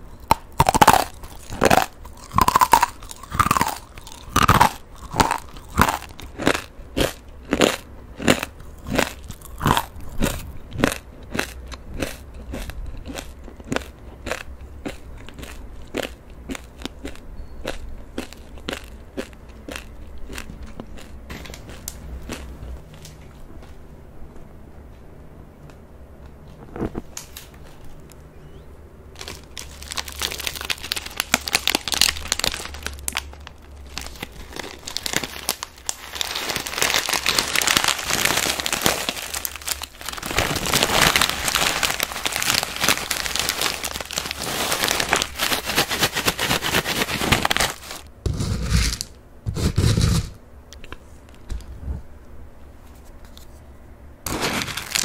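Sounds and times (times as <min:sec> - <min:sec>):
plastic packaging crinkling: 0:00.1 - 0:06.6, 0:29.1 - 0:50.0, 0:54.3 - 0:55.0.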